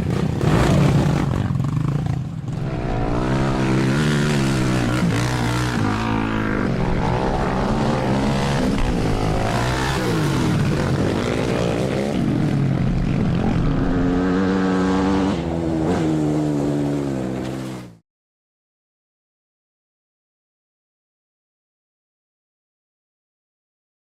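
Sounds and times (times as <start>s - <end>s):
quad bike engine revving: 0.0s - 18.0s.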